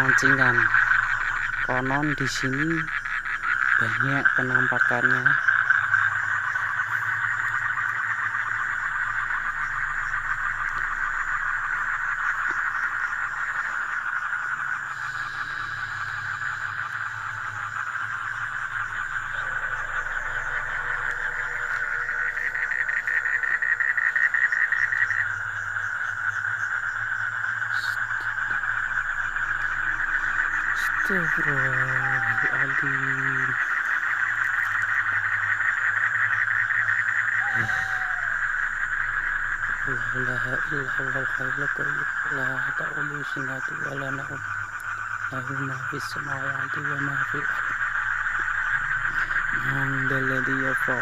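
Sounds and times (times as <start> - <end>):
frogs calling: 0.0 - 51.0
insects calling: 0.0 - 51.0.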